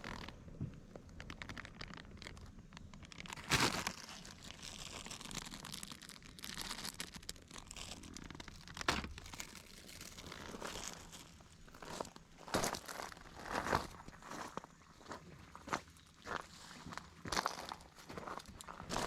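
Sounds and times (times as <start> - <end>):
material rustling and crinkling: 0.0 - 14.8.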